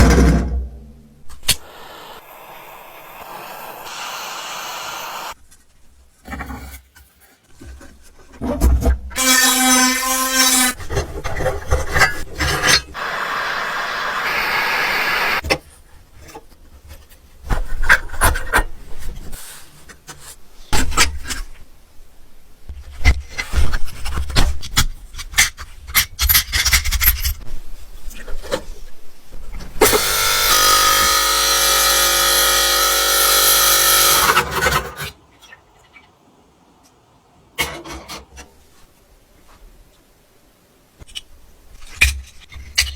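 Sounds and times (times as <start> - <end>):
brief high whine: 1.4 - 5.4, 13.0 - 15.4.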